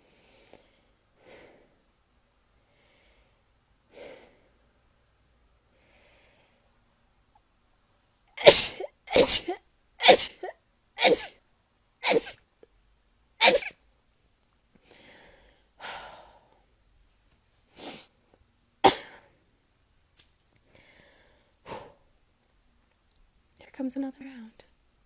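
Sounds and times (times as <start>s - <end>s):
breaths drawn in: 8.4s - 11.3s, 12.0s - 12.4s, 13.4s - 13.7s
person sneezing: 8.4s - 11.4s, 12.0s - 12.4s, 13.4s - 13.8s, 18.9s - 19.2s.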